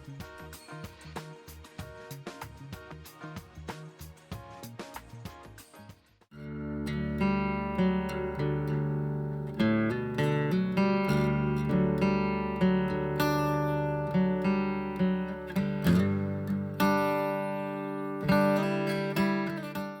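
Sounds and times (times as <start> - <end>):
acoustic guitar picking and strumming: 6.4 - 20.0.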